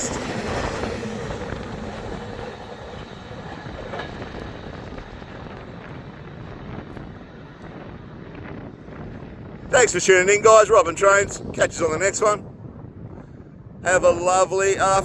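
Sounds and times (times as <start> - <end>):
train wheels on rail: 0.0 - 11.1.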